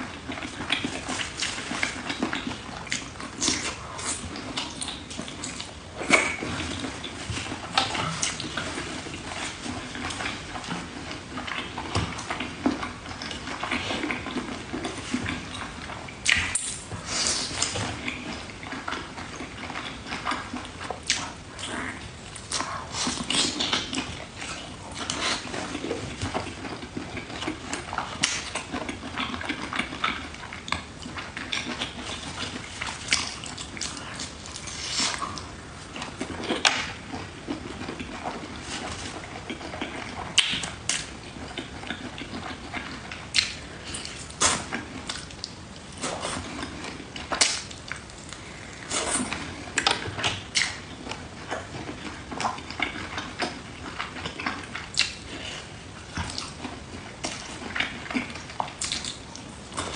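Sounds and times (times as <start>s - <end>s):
person chewing: 0.0s - 59.9s
wet mouth clicks: 58.8s - 59.2s.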